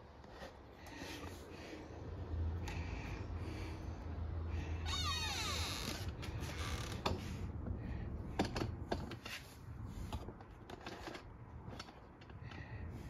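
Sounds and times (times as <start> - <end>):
lock parts clicking and knocking: 8.3 - 9.3.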